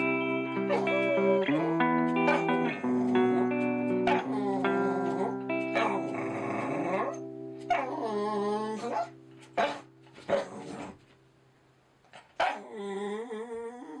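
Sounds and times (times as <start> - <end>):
dog howling: 0.0 - 10.9
music tones: 0.0 - 11.6
dog barking: 2.2 - 2.6, 4.0 - 4.4, 5.8 - 6.1, 7.0 - 8.0, 8.8 - 10.6, 12.4 - 12.7.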